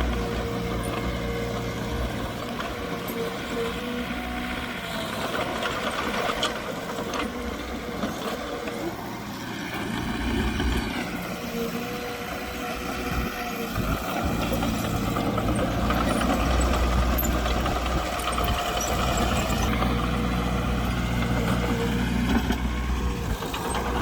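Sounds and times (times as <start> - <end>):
diesel machinery running: 0.0 - 24.0.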